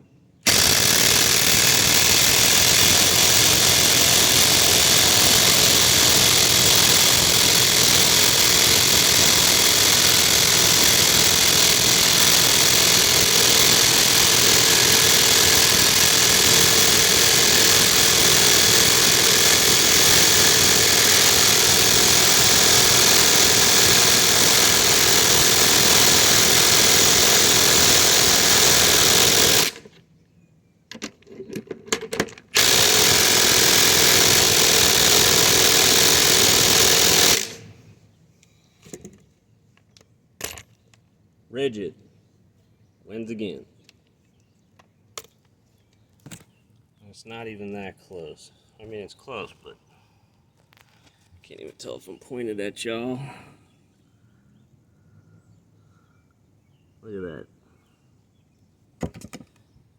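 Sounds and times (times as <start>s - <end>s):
impact wrenches rattling: 0.5s - 29.9s, 30.9s - 37.7s.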